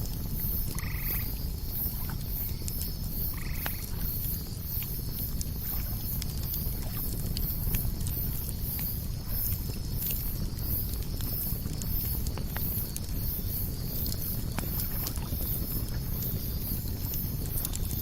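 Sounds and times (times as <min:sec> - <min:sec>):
campfire crackling: 0:00.0 - 0:18.0
frog croaking: 0:00.7 - 0:01.3, 0:03.3 - 0:03.9.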